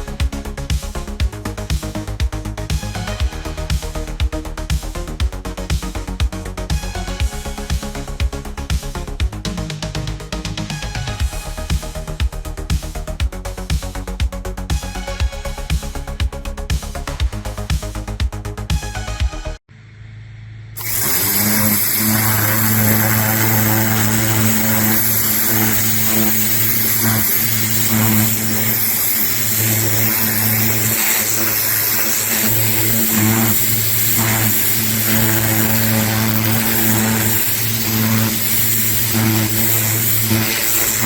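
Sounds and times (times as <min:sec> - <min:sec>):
high-pressure water spray hiss: 0:20.8 - 0:41.0
pressure washer motor hum: 0:20.8 - 0:41.0.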